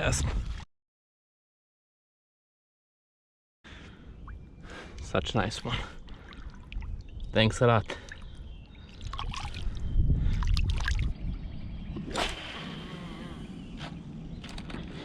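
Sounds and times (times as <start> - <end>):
water sloshing and splashing: 5.8 - 9.8, 10.4 - 11.1.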